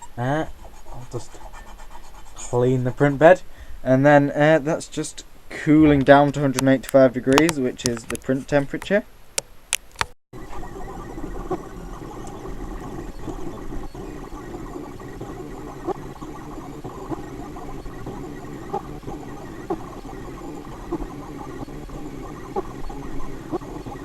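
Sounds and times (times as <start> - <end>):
printer fan and motor whir: 10.4 - 24.0
stepper motor chirps: 10.4 - 24.0.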